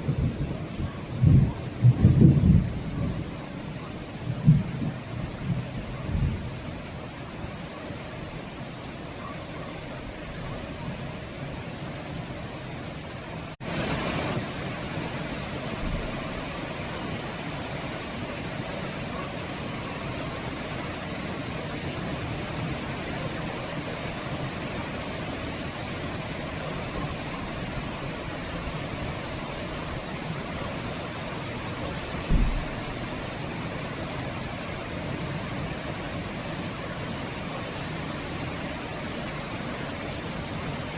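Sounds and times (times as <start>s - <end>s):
steady rain hiss: 0.0s - 40.9s
brief low thump: 32.3s - 32.9s.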